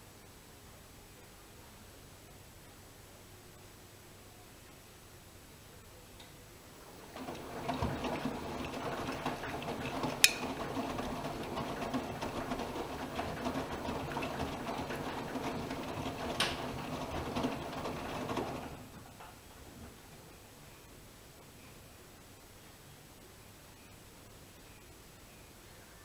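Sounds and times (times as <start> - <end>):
washing machine drum tumbling: 6.8 - 20.4.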